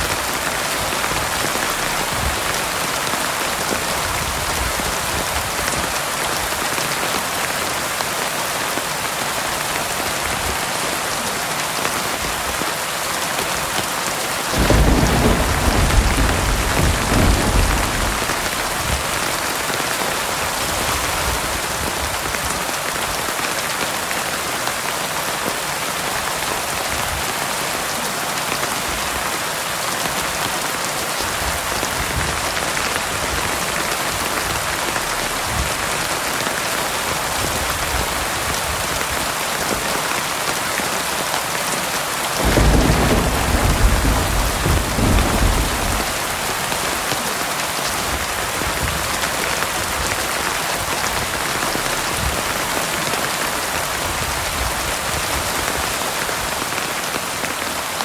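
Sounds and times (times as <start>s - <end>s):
thunder rumbling: 0.0s - 5.5s, 14.5s - 19.8s, 42.4s - 47.3s
heavy rain on hard surface: 0.0s - 58.0s.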